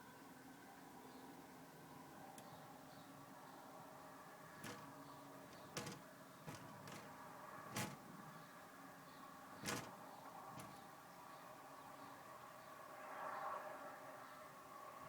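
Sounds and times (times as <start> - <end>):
shutter slats clacking: 4.6 - 4.9, 5.6 - 8.2, 9.6 - 10.0, 10.6 - 10.8.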